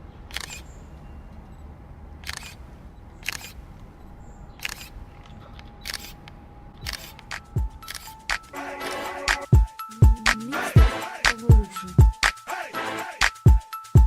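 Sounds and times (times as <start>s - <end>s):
low steady background noise: 0.0s - 8.0s
camera shutter clicking: 0.3s - 0.7s, 2.2s - 2.6s, 3.2s - 3.6s, 4.6s - 5.0s, 5.8s - 6.2s, 6.8s - 8.4s.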